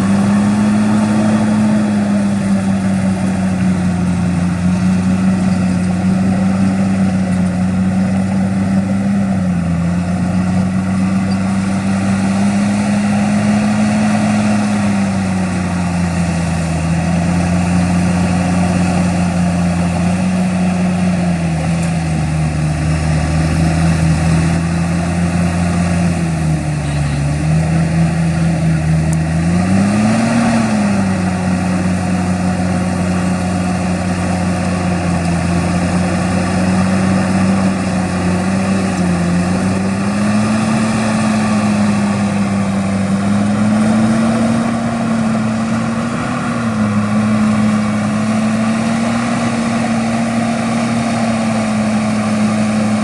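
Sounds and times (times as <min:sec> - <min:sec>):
heavy diesel engine running: 0:00.0 - 0:53.0.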